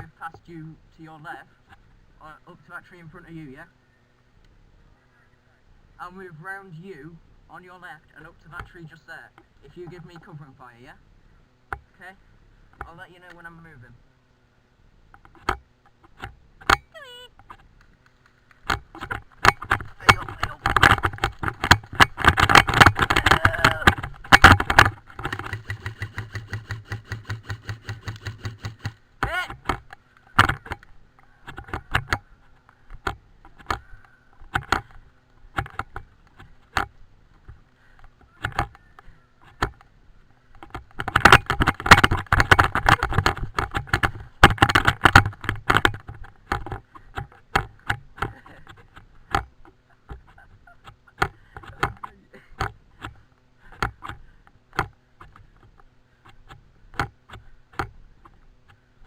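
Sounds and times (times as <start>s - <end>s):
camera and gear rattling: 15.1s - 58.9s
running footsteps: 17.5s - 56.6s.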